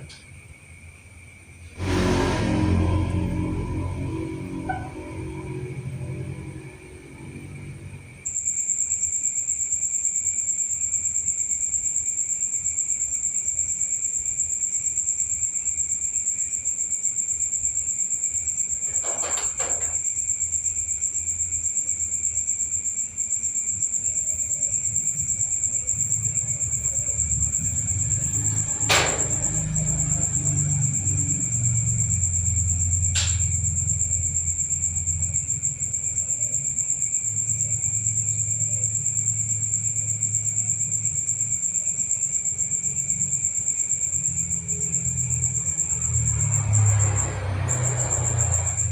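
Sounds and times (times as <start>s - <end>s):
crickets trilling: 0.0s - 48.9s
low rumble: 1.8s - 8.2s.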